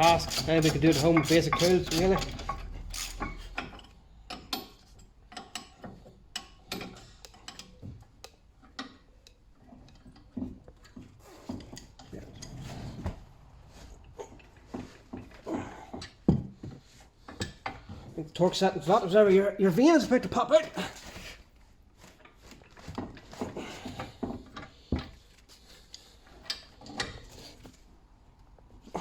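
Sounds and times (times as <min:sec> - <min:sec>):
ratchet clicking: 0:00.0 - 0:03.8.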